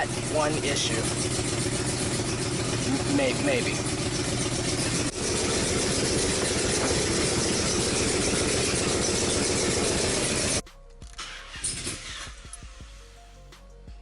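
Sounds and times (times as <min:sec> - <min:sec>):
car engine idling: 0:00.0 - 0:10.6.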